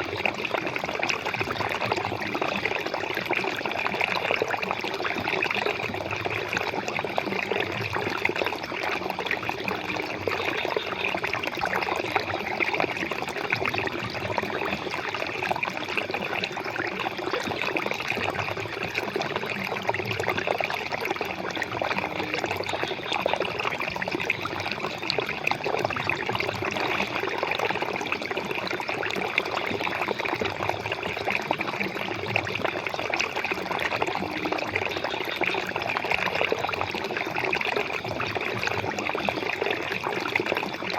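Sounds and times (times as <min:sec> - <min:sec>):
flowing water: 0:00.0 - 0:40.9.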